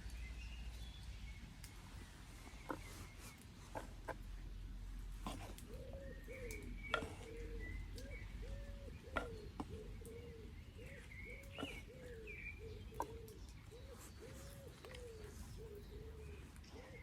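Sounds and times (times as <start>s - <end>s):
bird low cooing: 5.2s - 17.0s
bird chirps: 5.3s - 17.0s.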